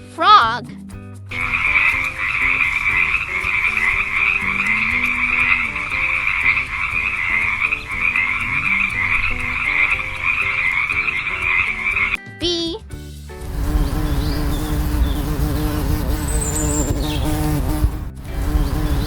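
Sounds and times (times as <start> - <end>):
frogs croaking in chorus: 1.4 - 12.2.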